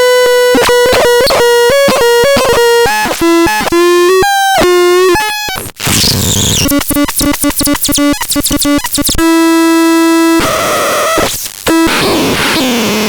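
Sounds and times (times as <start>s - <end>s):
harsh synthesized noise: 0.5s - 9.3s.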